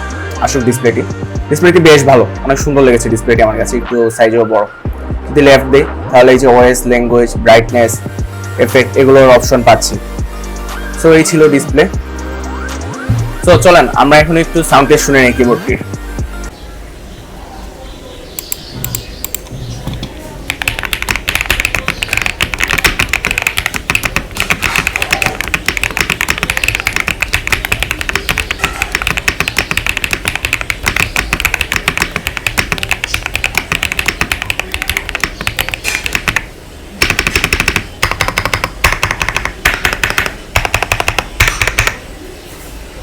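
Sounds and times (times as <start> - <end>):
fast mechanical keyboard typing: 18.4 - 42.0.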